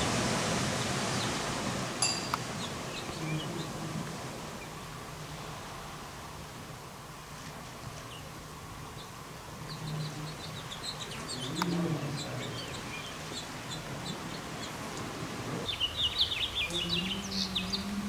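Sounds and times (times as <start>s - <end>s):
small birds twittering: 0.7s - 5.1s, 8.0s - 18.0s
faint low hum: 2.4s - 18.0s.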